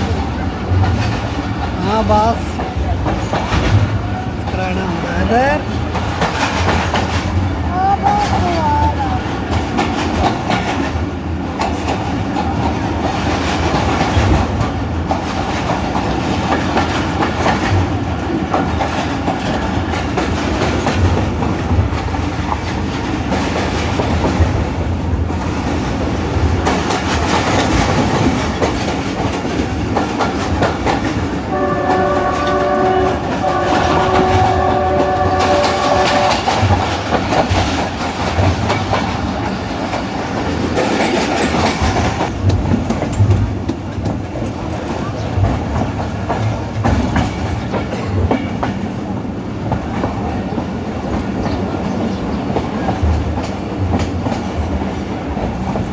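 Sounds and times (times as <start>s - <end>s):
train rumble: 0.0s - 55.9s
wheels clacking over rail joints: 0.0s - 55.9s
train horn blasts: 31.4s - 36.7s.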